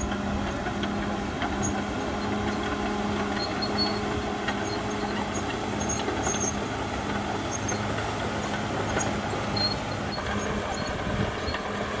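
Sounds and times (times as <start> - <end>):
bulldozer diesel engine running: 0.0 - 12.0
short high squeaks: 1.5 - 6.7, 7.5 - 11.8.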